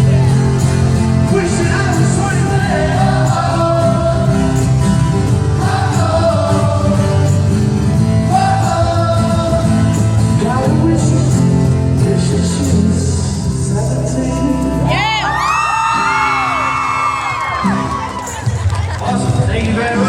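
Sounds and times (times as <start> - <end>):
pop-rock band playing live: 0.0 - 20.0.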